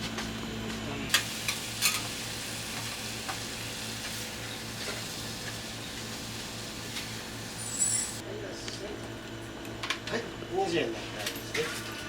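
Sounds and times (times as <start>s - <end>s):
offal sizzling on griddle: 1.1s - 8.2s.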